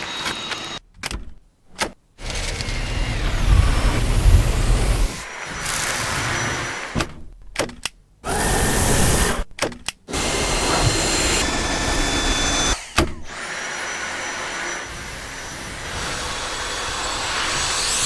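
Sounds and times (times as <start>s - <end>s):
vacuum cleaner motor running: 10.2s - 18.0s.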